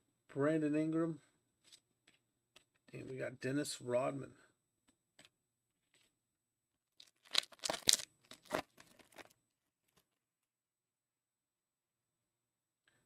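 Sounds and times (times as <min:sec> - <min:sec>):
wrapper ripping and crinkling: 0:07.0 - 0:09.3.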